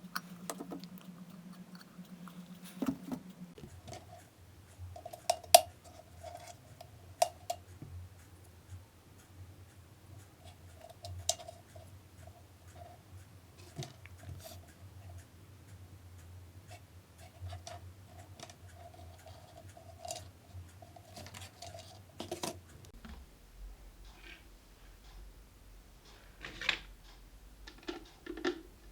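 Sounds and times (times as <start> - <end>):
faint low hum: 0.0 - 28.9
small hard parts clicking: 26.0 - 28.9.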